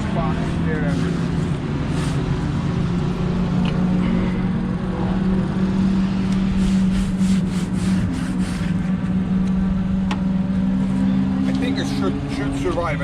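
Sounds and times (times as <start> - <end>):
motor engine running: 0.0 - 13.0.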